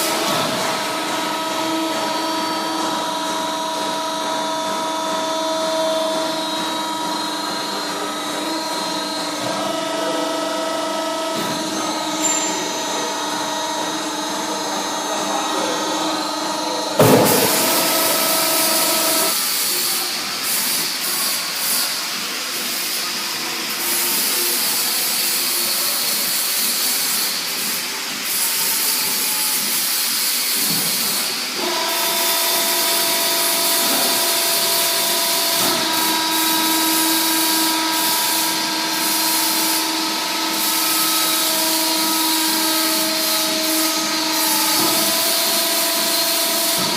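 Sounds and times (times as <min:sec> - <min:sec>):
hydraulic press motor humming: 0:00.0 - 0:20.6, 0:28.2 - 0:46.9
loud clunk: 0:17.0 - 0:19.3.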